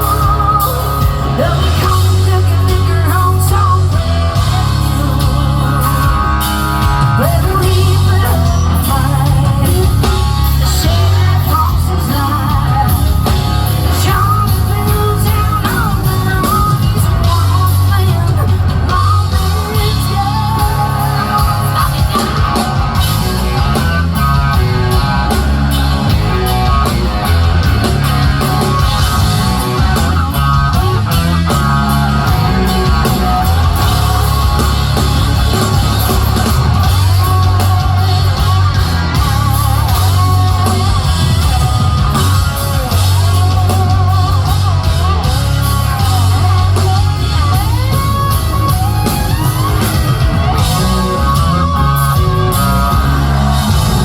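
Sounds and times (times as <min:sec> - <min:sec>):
person singing: 0:00.0 - 0:25.8
live rock band playing: 0:00.0 - 0:54.0.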